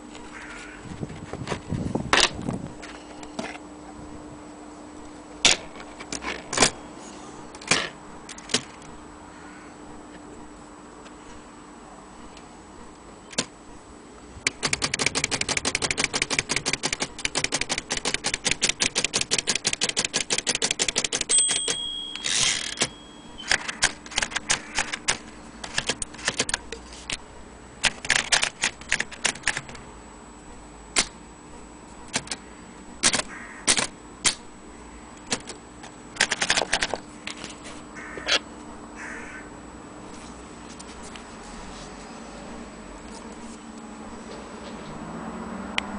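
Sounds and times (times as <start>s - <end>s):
typewriter keystrokes: 14.4s - 26.6s, 27.8s - 29.8s, 32.1s - 32.4s, 33.0s - 34.4s, 35.3s - 35.6s, 36.2s - 37.0s
typewriter carriage return: 14.4s - 27.2s, 27.8s - 29.8s, 32.1s - 32.4s, 33.0s - 34.4s, 35.3s - 35.6s, 36.2s - 37.6s
typewriter margin bell: 20.5s - 24.4s.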